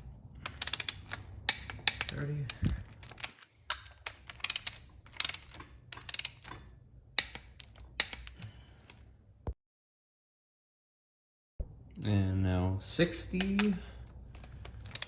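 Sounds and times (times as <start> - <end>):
ratchet torque wrench clicking: 0.4 - 8.4, 14.4 - 15.0.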